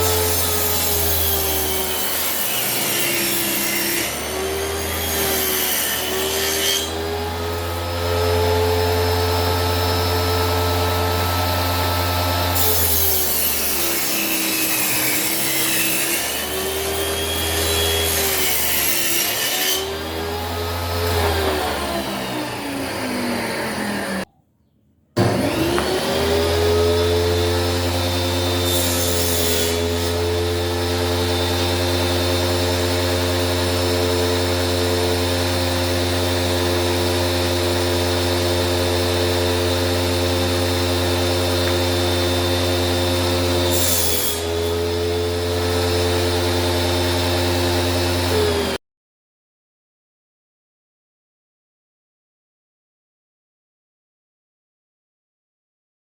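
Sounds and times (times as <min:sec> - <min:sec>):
circular saw motor whining: 0:20.7 - 0:24.3.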